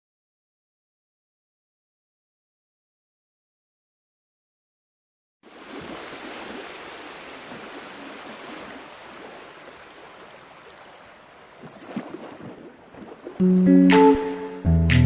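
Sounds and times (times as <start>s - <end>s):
surf washing on beach: 5.4s - 13.4s.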